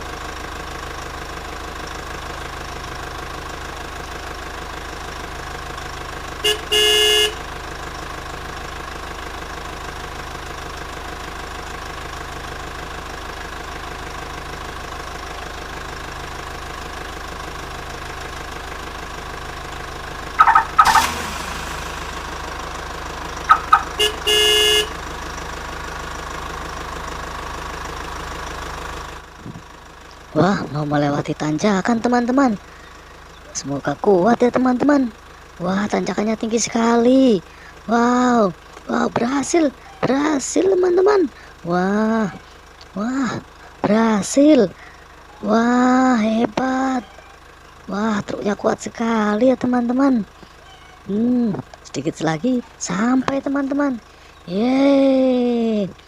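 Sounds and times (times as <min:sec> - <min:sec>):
toy horn honks: 0:06.4 - 0:07.4, 0:20.4 - 0:21.3, 0:23.5 - 0:25.0
toy truck engine sound: 0:20.4 - 0:22.2, 0:33.5 - 0:56.0.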